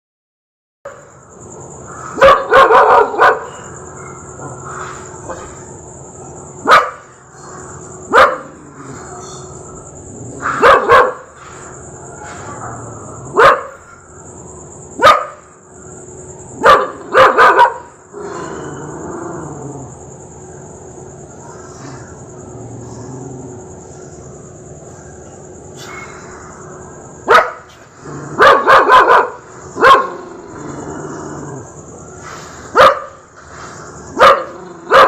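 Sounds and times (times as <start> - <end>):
dog barking: 2.1 - 4.2, 6.6 - 7.2, 8.1 - 9.4, 10.4 - 11.4, 13.3 - 13.9, 15.0 - 15.5, 16.6 - 18.0, 27.2 - 30.3, 32.7 - 33.2, 34.1 - 35.0.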